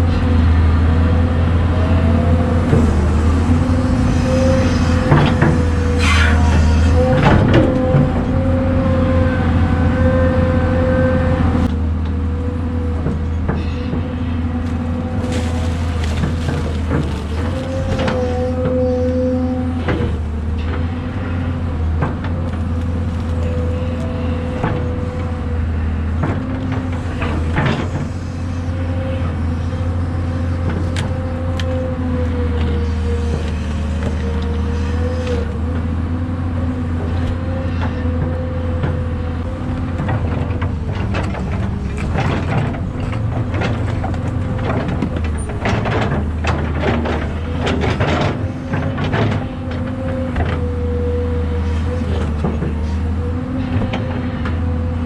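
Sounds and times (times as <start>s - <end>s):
excavator diesel engine: 0.0s - 55.0s
hydraulic whine: 0.0s - 55.0s
knocks clanks and scrapes: 2.5s - 8.4s, 14.6s - 19.3s, 37.1s - 50.7s.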